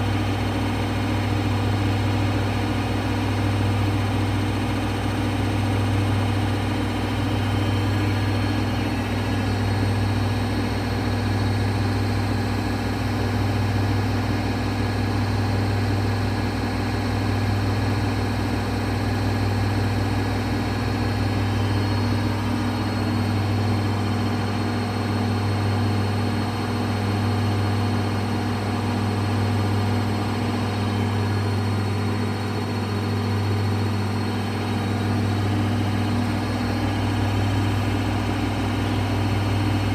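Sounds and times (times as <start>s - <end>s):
washing machine spin cycle hum: 0.0s - 39.9s.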